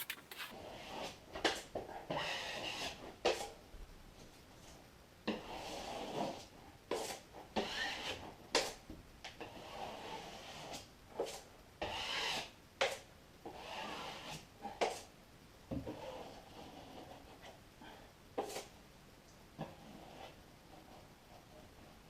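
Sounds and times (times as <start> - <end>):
taping knife scraping compound: 0.0 - 0.5.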